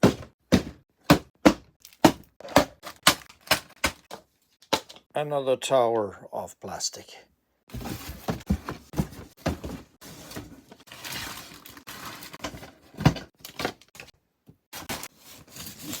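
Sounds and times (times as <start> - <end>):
boxes knocking and thudding: 0.0 - 4.9, 7.7 - 14.1.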